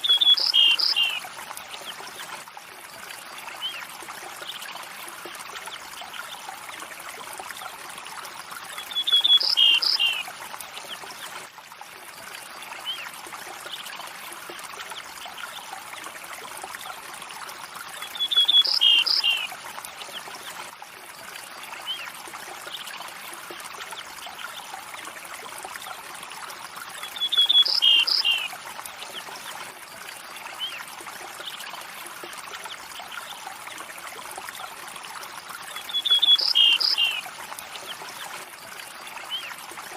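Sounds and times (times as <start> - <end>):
river water flowing: 0.0 - 39.9
songbird trilling call: 35.9 - 37.2.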